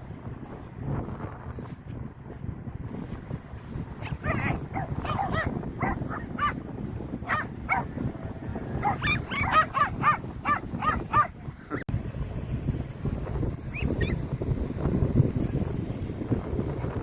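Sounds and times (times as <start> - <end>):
wind rumble on microphone: 0.0 - 17.0
dog yipping barks: 4.0 - 6.6, 7.2 - 8.0, 8.8 - 11.4, 13.7 - 14.2.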